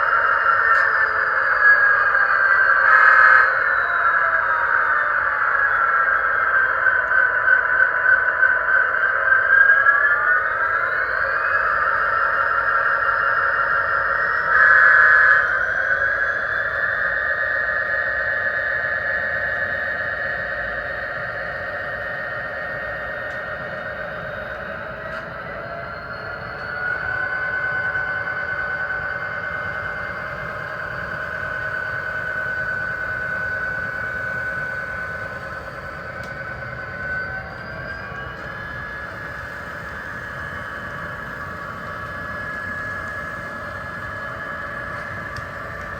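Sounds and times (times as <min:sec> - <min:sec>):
model train motor whine: 0:00.0 - 0:45.9
wheels rumbling on track: 0:20.3 - 0:45.9.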